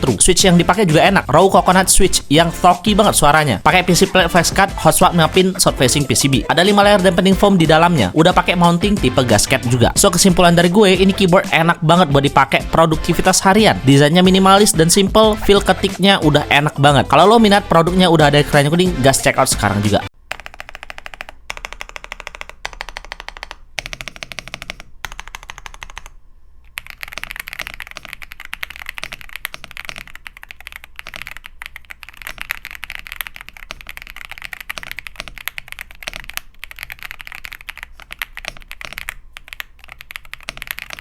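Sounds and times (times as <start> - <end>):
fast mechanical keyboard typing: 20.3 - 41.0.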